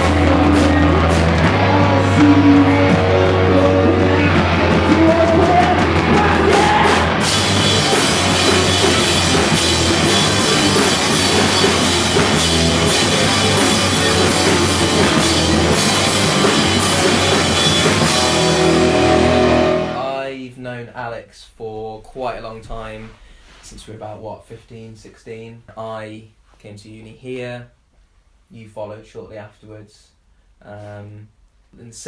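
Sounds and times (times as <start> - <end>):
grunge band playing live: 0.0 - 20.1
crashing cymbals: 5.7 - 20.1.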